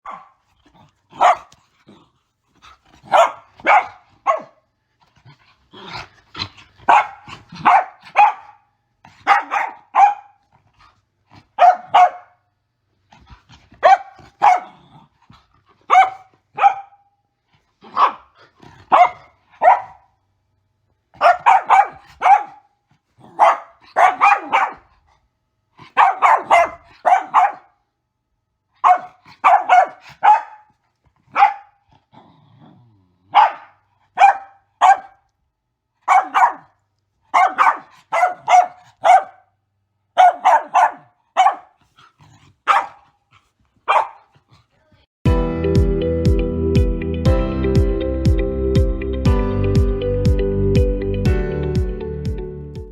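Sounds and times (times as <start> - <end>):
dog barking: 0.0 - 0.4, 1.1 - 1.5, 3.0 - 4.6, 6.9 - 10.4, 11.6 - 12.5, 13.8 - 14.8, 15.9 - 17.1, 17.9 - 18.3, 18.9 - 20.1, 21.2 - 24.9, 25.8 - 27.8, 28.8 - 30.7, 31.3 - 31.8, 33.3 - 35.2, 36.0 - 39.5, 40.2 - 41.8, 42.6 - 43.2, 43.9 - 44.3.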